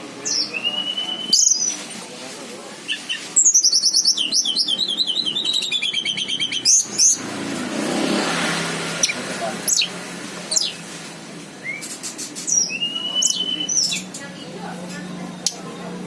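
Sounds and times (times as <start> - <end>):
songbird singing: 0.0 - 1.9, 2.8 - 7.4, 9.0 - 10.8, 11.6 - 16.0.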